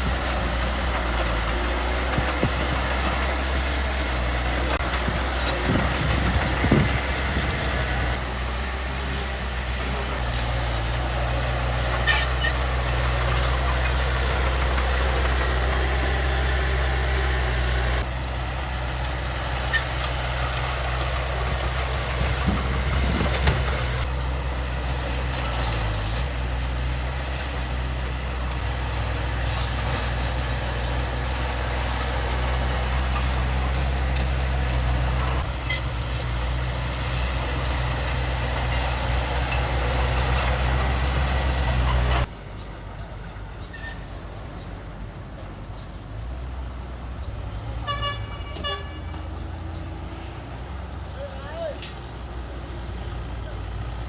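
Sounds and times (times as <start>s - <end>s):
heavy diesel machinery running: 0.0s - 54.0s
short horn toot: 47.8s - 49.3s.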